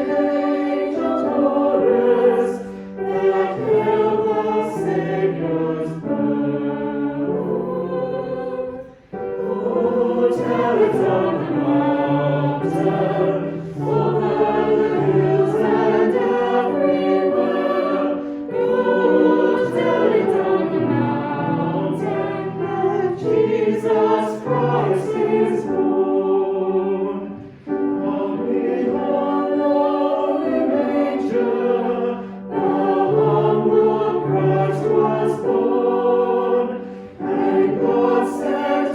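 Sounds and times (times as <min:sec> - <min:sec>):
choir singing: 0:00.0 - 0:38.9.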